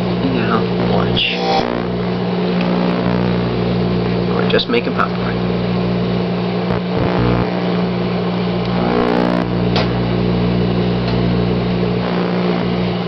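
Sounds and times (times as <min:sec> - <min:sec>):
microwave oven humming: 0:00.0 - 0:13.0
electrical crackle: 0:01.1 - 0:03.5, 0:06.6 - 0:07.9, 0:08.6 - 0:09.7, 0:12.0 - 0:12.7.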